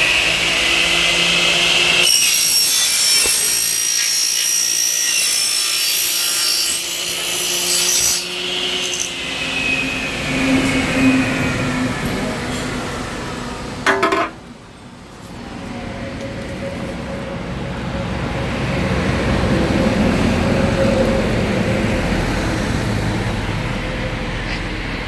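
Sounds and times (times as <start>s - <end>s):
saw motor hum: 0.0s - 11.4s
sharp clunk: 13.8s - 14.4s.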